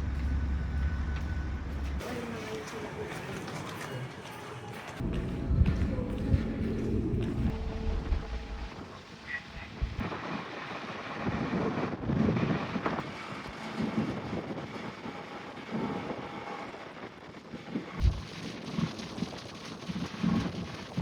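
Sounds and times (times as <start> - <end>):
ship engine noise: 0.0 - 10.9
wind gusting on microphone: 5.0 - 21.0.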